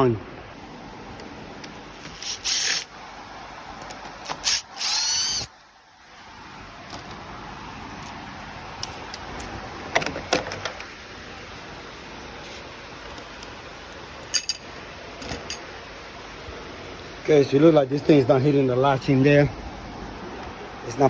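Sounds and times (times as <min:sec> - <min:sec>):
power drill whining: 0:02.0 - 0:02.9, 0:04.2 - 0:05.5.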